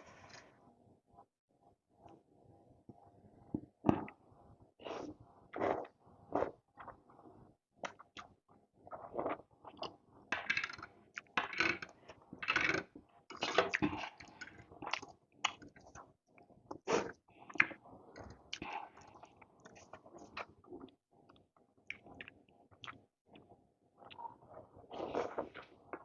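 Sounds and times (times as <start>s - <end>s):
wet slurping and chewing: 7.8s - 9.9s, 13.4s - 26.0s.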